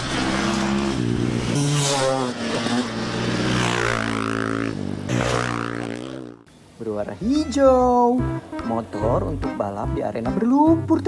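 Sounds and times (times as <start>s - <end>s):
motorcycle engine revving: 0.0s - 6.5s.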